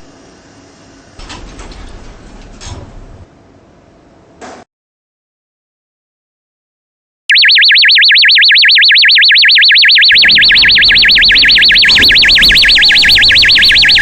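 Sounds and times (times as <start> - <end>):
fire alarm warbling tone: 7.3 - 14.0.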